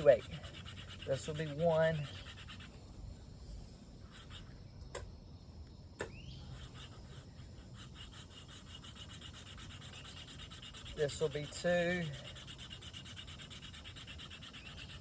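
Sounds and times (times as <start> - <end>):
wood-on-wood rubbing: 6.5 - 15.0.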